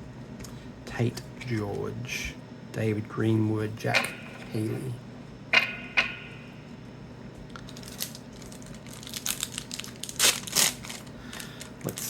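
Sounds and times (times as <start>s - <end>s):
wrapper crinkling: 7.5s - 12.0s
wrapper ripping: 7.5s - 12.0s.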